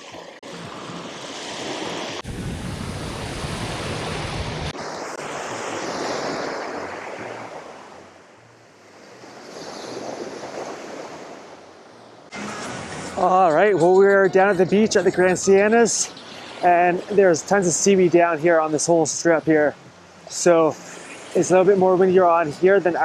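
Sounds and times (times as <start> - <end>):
ocean surf on beach: 0.0 - 23.0
wind buffeting microphone: 1.9 - 4.9.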